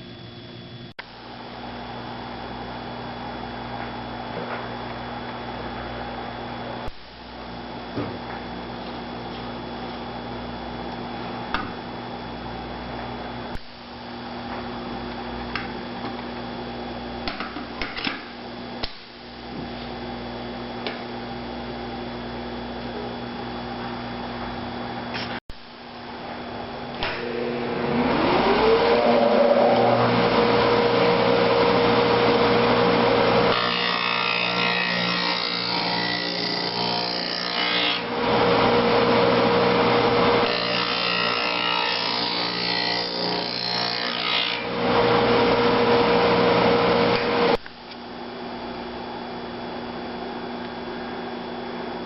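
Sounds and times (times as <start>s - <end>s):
grinding wheel motor whine: 25.9s - 48.4s.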